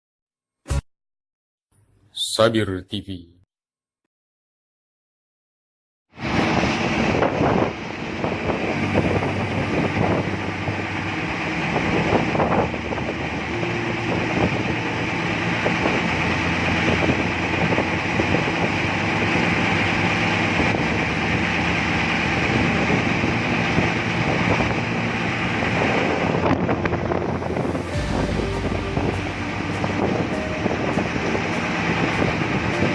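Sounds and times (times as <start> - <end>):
wind on microphone: 6.2 - 21.5, 22.1 - 32.9
boat diesel engine running: 6.2 - 32.9.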